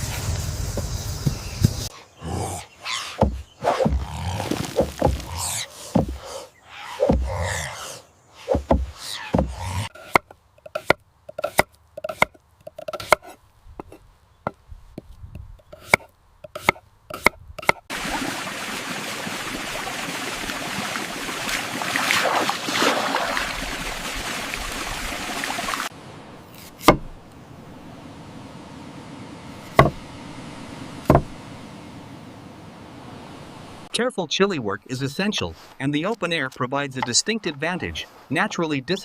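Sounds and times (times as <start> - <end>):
steady hiss: 0.0 - 1.9
knife chopping on wooden board: 5.9 - 6.2, 8.5 - 14.0, 15.8 - 17.8, 26.6 - 27.1, 29.7 - 30.0, 31.1 - 31.3
single knock: 29.8 - 30.0, 31.1 - 31.3.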